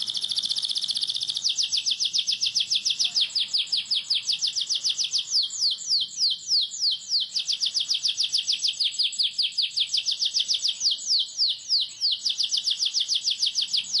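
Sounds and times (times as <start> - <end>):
canary singing rapid chirps: 0.0 - 14.0.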